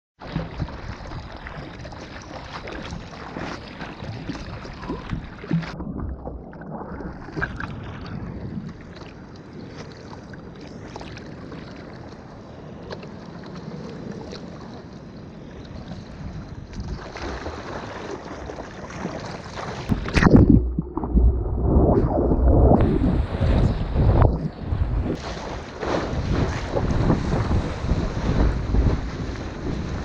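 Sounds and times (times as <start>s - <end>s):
wind: 0.2s - 30.0s
ocean surf: 19.8s - 30.0s
wind buffeting microphone: 19.9s - 25.2s, 25.8s - 30.0s.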